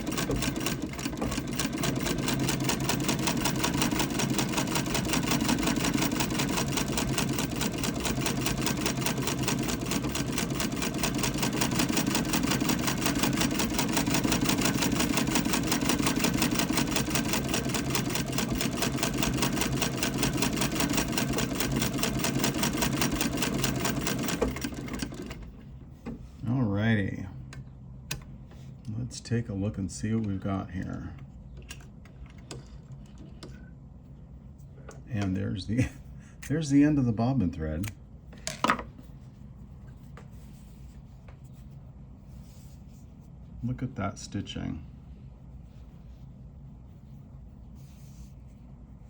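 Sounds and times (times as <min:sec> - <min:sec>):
treadle sewing machine stitching: 0:00.0 - 0:25.5.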